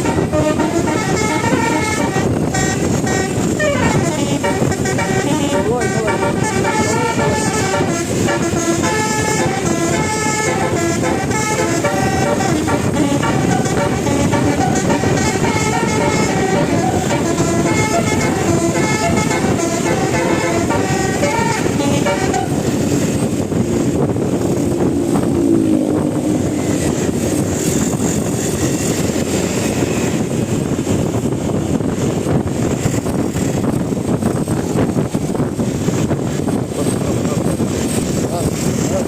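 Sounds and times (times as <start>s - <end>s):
musical air horn playing tune: 0.0s - 27.6s
road noise: 0.0s - 39.0s
vehicle engine: 0.0s - 39.0s.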